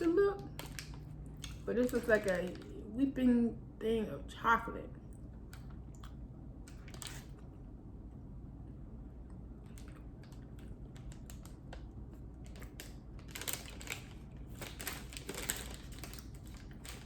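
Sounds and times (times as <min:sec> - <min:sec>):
plastic packet crackling: 0:00.0 - 0:02.9, 0:09.7 - 0:17.0.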